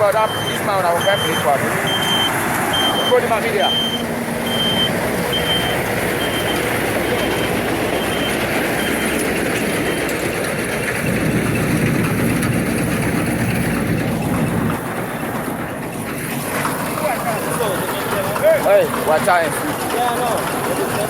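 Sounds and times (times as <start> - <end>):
reversing alarm beeping: 0.0 - 10.4
heavy vehicle engine running: 0.0 - 21.0.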